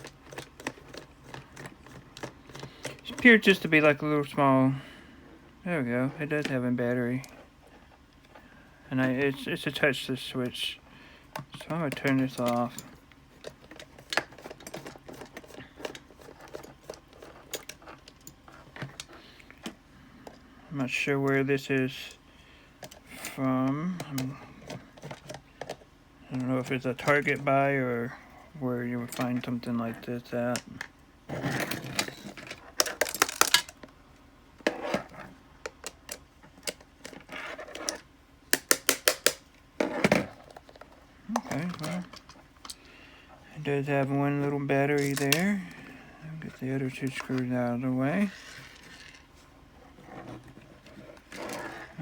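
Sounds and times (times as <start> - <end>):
plastic parts clicking: 0.0 - 3.3, 31.5 - 33.9, 34.9 - 42.8, 45.0 - 45.6
plastic parts scraping: 0.0 - 4.0, 11.4 - 20.4, 29.0 - 34.0, 34.6 - 43.4, 44.0 - 52.0.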